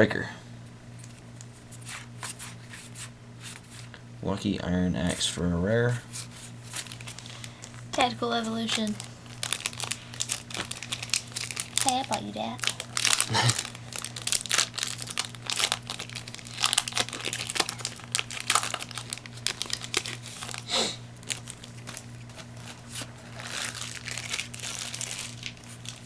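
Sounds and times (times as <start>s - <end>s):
foil wrapper crinkling: 6.0s - 26.0s.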